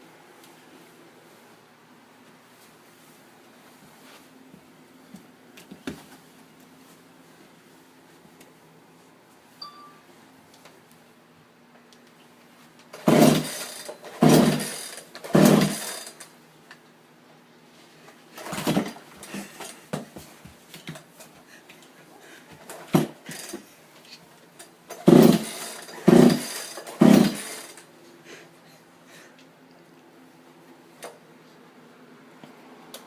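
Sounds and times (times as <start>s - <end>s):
chainsaw pull-start rasping: 13.0s - 16.3s, 18.4s - 19.5s, 22.7s - 23.6s, 24.9s - 27.9s.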